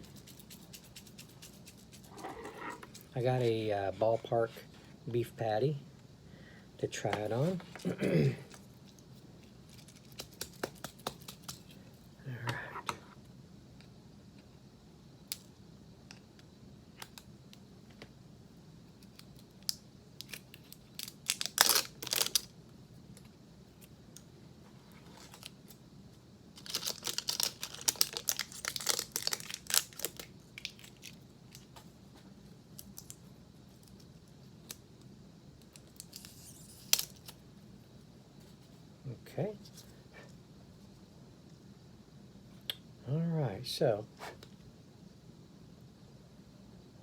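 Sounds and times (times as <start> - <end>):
packaging crinkling and tearing: 20.2 - 22.5, 26.6 - 31.7, 35.8 - 37.4.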